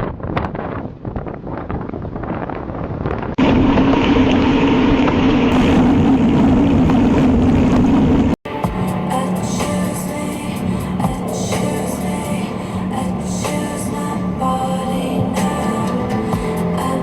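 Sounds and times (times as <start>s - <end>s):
strong low hum: 0.0s - 17.0s
wind on microphone: 0.0s - 17.0s
engine and road drone: 3.4s - 17.0s.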